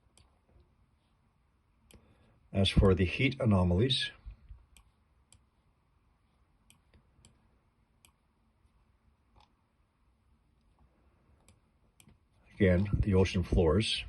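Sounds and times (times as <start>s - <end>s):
computer mouse clicking: 0.0s - 0.4s, 4.7s - 5.5s, 6.6s - 8.3s, 9.3s - 9.6s, 11.4s - 12.3s.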